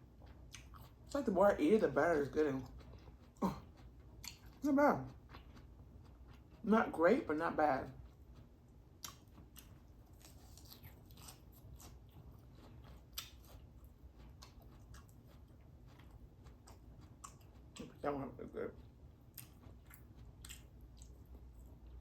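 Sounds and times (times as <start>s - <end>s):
person chewing food: 0.0s - 1.1s, 2.2s - 6.7s, 7.8s - 18.0s, 18.6s - 22.0s.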